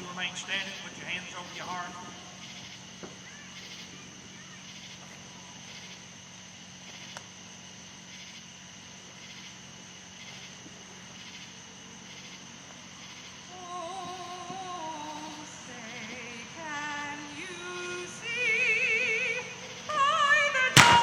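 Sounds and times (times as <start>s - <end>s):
insects chirping: 0.0s - 21.0s
low steady hum: 0.0s - 21.0s
woman singing: 13.5s - 21.0s.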